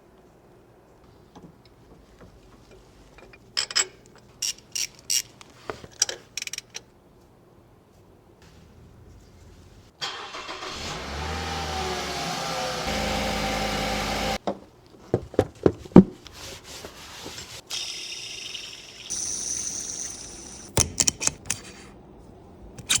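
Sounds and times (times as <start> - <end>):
car engine starting and revving: 10.0 - 14.4.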